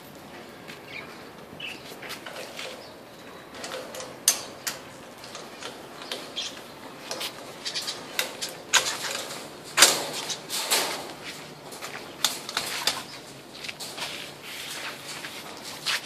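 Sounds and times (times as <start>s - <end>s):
budgerigars chirping: 0.9s - 1.9s.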